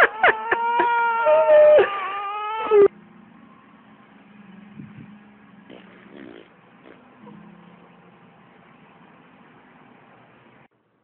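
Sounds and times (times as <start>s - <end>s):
high wailing cry: 0.0s - 2.9s.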